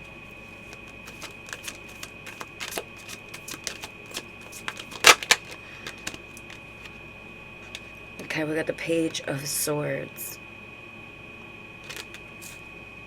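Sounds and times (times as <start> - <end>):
cards shuffling: 0.6 - 7.0, 11.8 - 12.6
sharp card snaps: 1.1 - 6.5.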